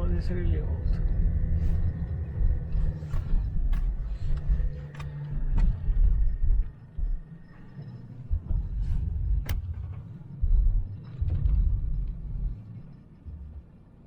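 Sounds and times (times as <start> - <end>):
car interior rumble: 0.0 - 14.0
clicks inside car: 2.7 - 7.2.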